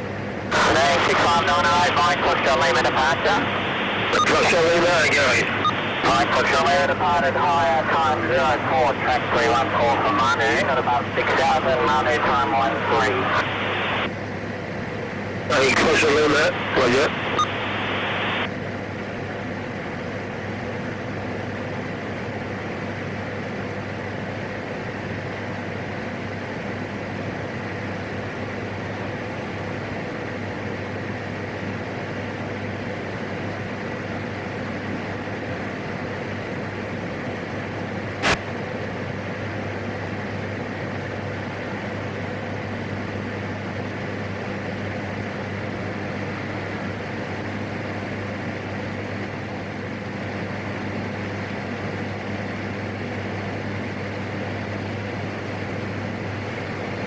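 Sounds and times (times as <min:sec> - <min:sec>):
turboprop engine drone: 0:00.0 - 0:57.0
sharp click: 0:38.2 - 0:38.5.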